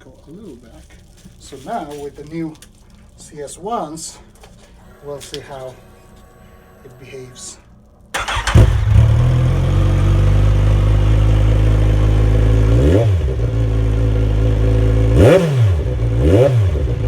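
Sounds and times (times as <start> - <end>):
motorcycle engine idling: 8.2 - 17.0.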